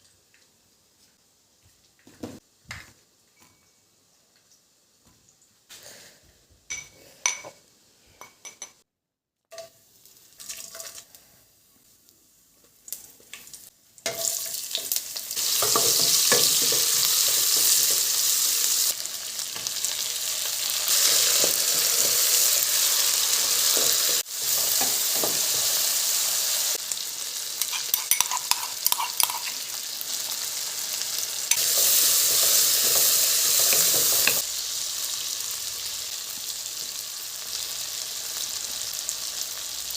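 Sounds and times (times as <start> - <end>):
food sizzling in a pan: 9.5 - 39.9
kitchen utensils clinking: 15.5 - 18.1, 27.6 - 29.7, 31.5 - 34.4
stirring scrapes: 27.6 - 29.6.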